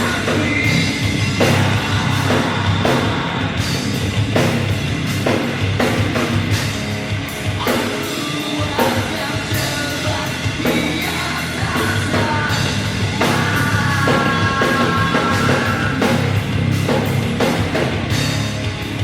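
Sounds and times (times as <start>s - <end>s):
drum kit beat: 0.0s - 19.0s
rock band playing: 0.0s - 19.0s.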